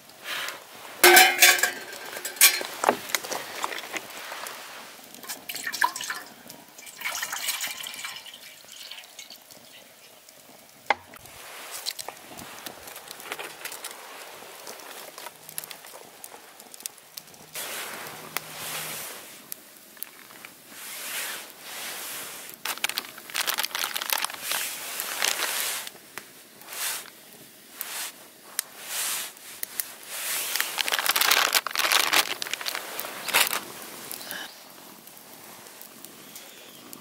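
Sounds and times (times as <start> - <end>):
rustling and crinkling: 0.7 - 5.5, 11.1 - 27.2, 27.8 - 36.3.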